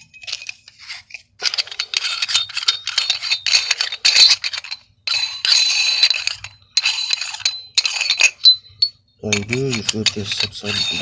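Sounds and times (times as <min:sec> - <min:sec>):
loose metal parts clinking: 0:00.0 - 0:11.0.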